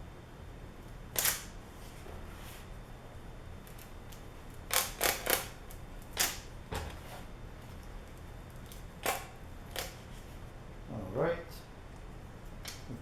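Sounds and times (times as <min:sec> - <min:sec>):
tape strip being pulled: 0:01.2 - 0:01.6, 0:04.7 - 0:06.5.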